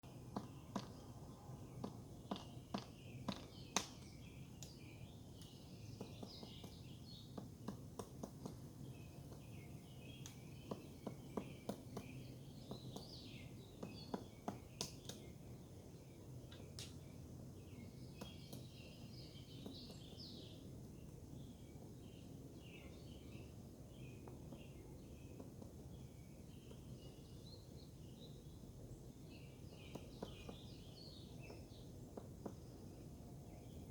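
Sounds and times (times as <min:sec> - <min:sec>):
small birds chirping: 0:00.0 - 0:33.9
woodpecker knocking on wood: 0:00.3 - 0:01.1, 0:01.7 - 0:04.8, 0:05.4 - 0:09.5, 0:10.1 - 0:15.3, 0:18.1 - 0:20.3, 0:24.1 - 0:25.8, 0:29.7 - 0:32.8.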